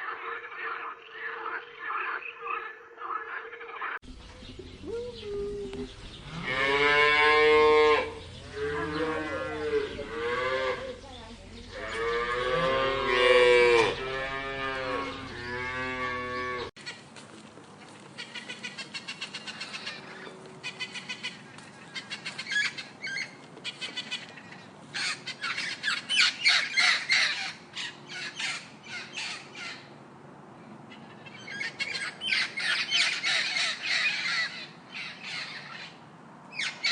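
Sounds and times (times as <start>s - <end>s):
cow mooing: 6.2s - 11.0s, 11.7s - 16.7s
bird squawking: 31.0s - 36.0s.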